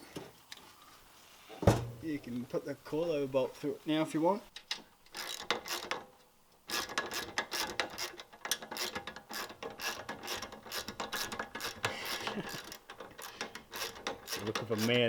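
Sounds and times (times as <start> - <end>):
ratchet wrench clicking: 5.1 - 6.0, 6.7 - 15.0.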